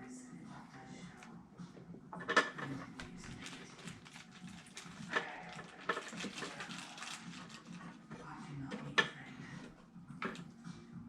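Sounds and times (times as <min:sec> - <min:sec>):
small hard items clinking: 0:03.0 - 0:08.0.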